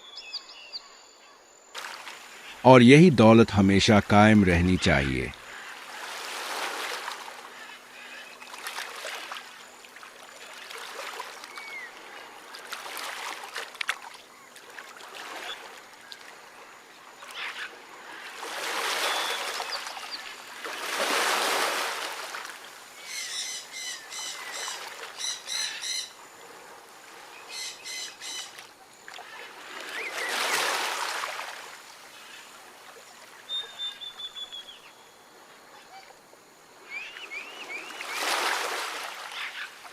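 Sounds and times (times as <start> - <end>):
birds calling: 23.0 - 26.2.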